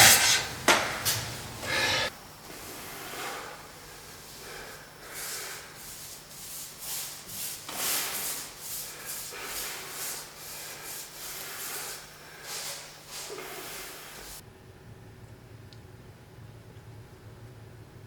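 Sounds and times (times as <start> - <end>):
sandpaper rubbing back and forth: 4.2 - 14.4.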